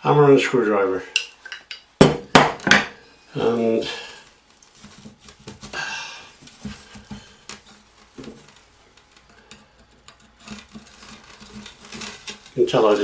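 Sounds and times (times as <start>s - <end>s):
hammer knocking on metal: 2.0s - 2.9s.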